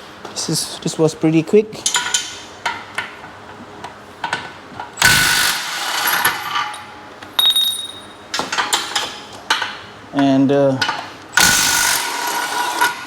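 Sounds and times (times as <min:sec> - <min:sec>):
steel parts clanking: 0:06.0 - 0:09.7
ringing metal clink: 0:06.2 - 0:08.2.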